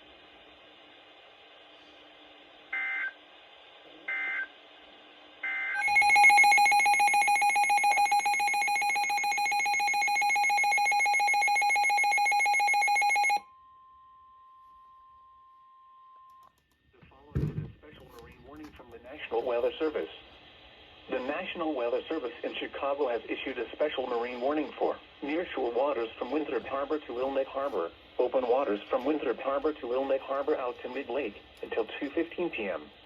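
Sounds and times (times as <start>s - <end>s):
rapidly pulsing electronic alarm: 5.4s - 13.4s
faint steady warning tone: 5.4s - 16.5s, 21.1s - 32.7s
alert header data bursts: 5.8s - 13.4s.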